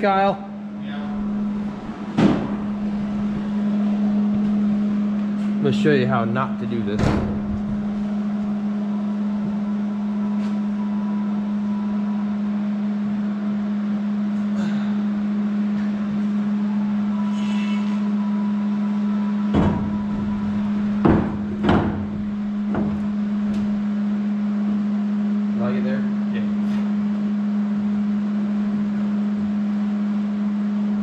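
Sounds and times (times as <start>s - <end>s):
steady machine hum: 0.0s - 31.0s
sharp knocks: 21.0s - 23.1s.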